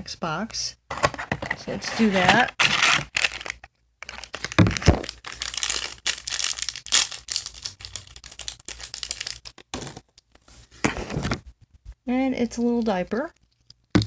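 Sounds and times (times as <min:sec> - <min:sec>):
packaging crinkling and tearing: 0:01.8 - 0:09.8.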